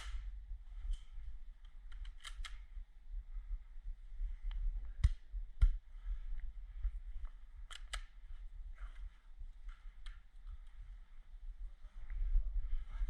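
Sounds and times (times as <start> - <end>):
camera handling rumble: 0.9 - 2.7, 7.6 - 8.2.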